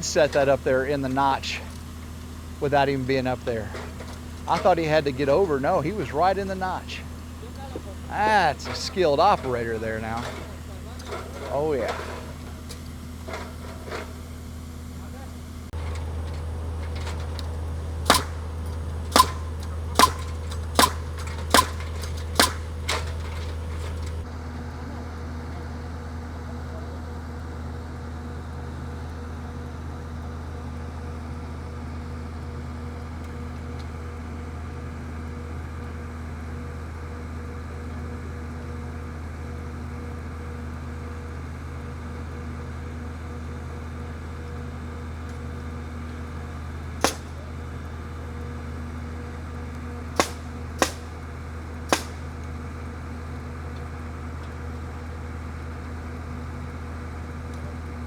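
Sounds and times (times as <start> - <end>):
diesel engine idling: 0.0 - 58.0
sharp impact cracks: 15.8 - 24.2, 47.0 - 47.5, 50.2 - 51.3, 51.9 - 52.5.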